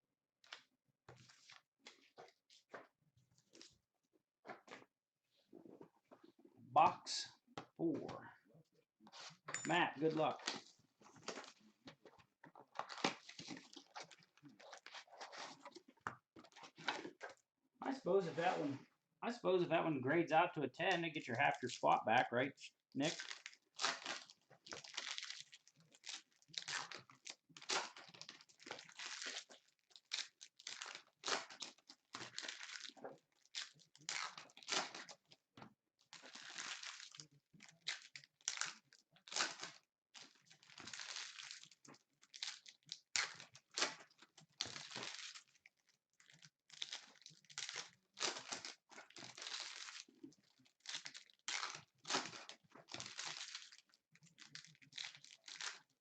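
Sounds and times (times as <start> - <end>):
plastic wrappers crinkling and tearing: 9.7 - 17.4, 23.0 - 35.4, 36.1 - 56.0.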